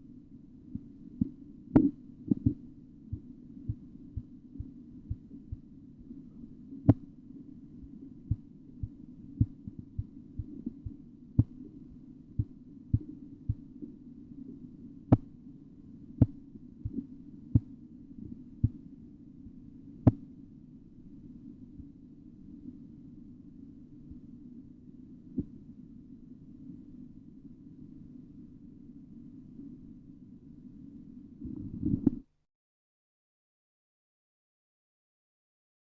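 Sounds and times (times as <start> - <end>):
steady low hum: 0.0 - 32.3
pulse taps through stethoscope: 0.8 - 2.6.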